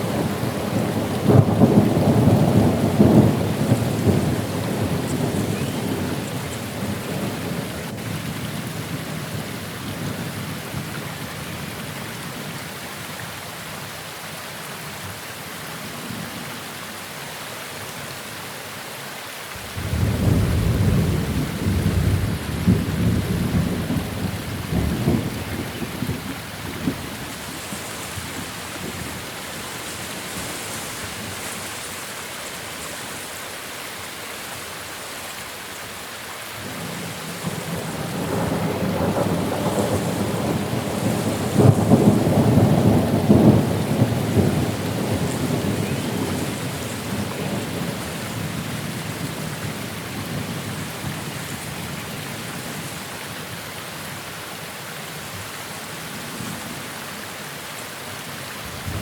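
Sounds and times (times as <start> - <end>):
steady rain: 0.0 - 59.0
thunder rumbling: 19.7 - 31.6, 36.7 - 51.2, 58.7 - 59.0.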